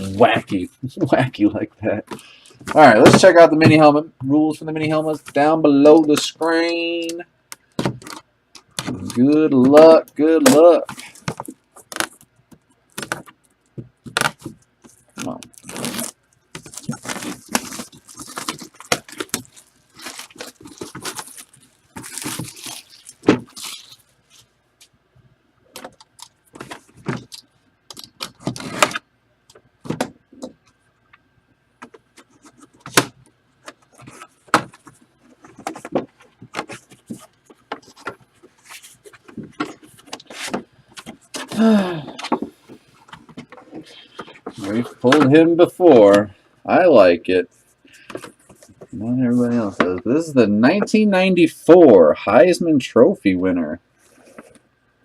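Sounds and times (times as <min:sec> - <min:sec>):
packaging crinkling and rustling: 0:10.5 - 0:24.6, 0:25.7 - 0:29.0, 0:31.8 - 0:46.3.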